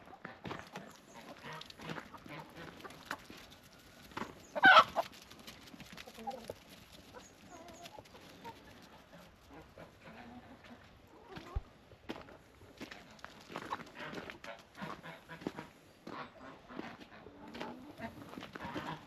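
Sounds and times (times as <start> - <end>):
chickens clucking: 0.0 - 19.0
chicken squawk: 4.5 - 5.1.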